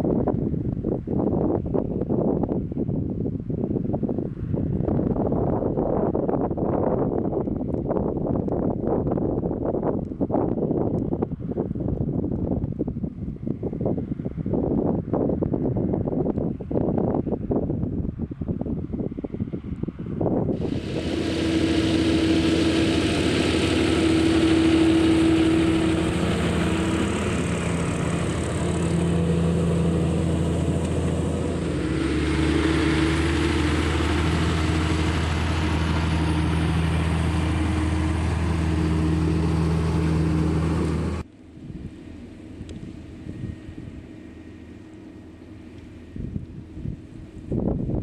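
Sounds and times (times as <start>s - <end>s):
faint wind noise: 0.0s - 48.0s
tractor diesel engine running: 20.6s - 48.0s.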